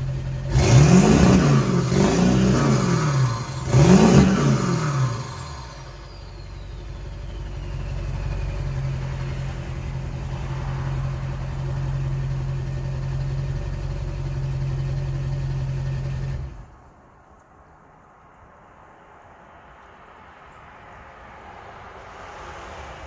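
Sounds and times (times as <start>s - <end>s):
diesel engine droning: 0.0s - 17.1s.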